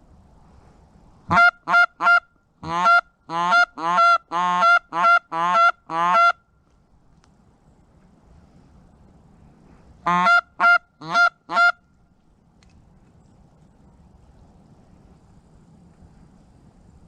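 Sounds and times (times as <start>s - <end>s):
goose call honks: 1.3s - 6.4s, 10.0s - 11.8s.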